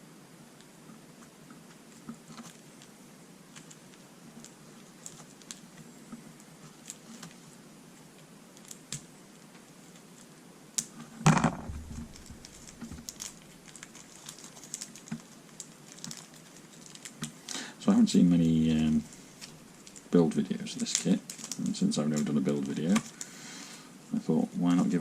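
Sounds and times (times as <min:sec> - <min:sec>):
plastic parts clicking and rustling: 0:03.5 - 0:05.9, 0:11.3 - 0:17.4, 0:19.4 - 0:23.2.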